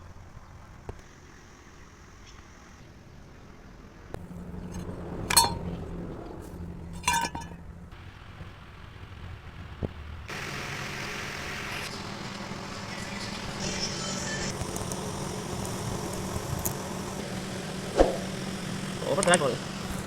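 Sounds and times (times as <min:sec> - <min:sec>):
sharp metallic clinks: 0:04.3 - 0:07.8
mechanical hum with hiss: 0:08.0 - 0:20.0.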